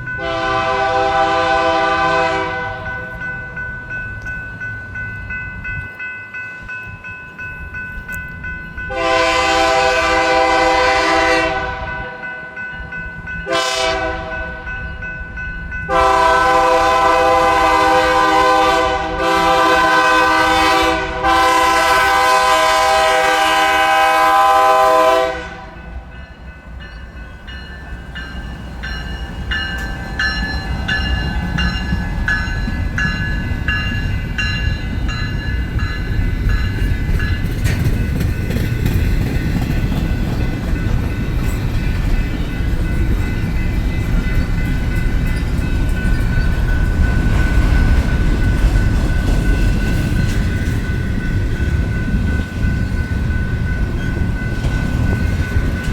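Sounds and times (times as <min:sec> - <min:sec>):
train rumble: 0:00.0 - 0:55.9
locomotive air horn chord: 0:00.2 - 0:03.1, 0:08.9 - 0:12.2, 0:13.4 - 0:14.7, 0:15.9 - 0:25.9
wheels clicking over rail joints: 0:27.4 - 0:55.9.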